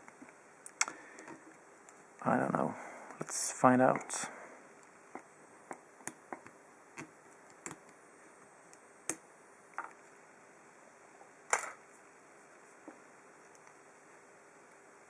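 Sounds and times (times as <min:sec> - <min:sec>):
small clicks and taps: 0:04.8 - 0:08.0.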